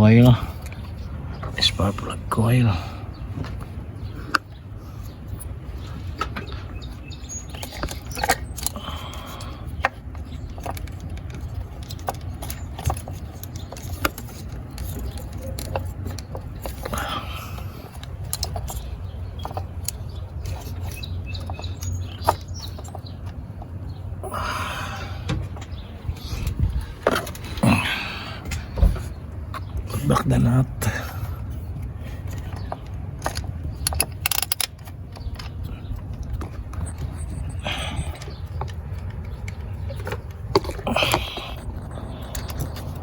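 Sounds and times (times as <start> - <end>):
clicks and clinks of engine parts: 0.0 - 43.0
steady low rumble: 0.0 - 43.0.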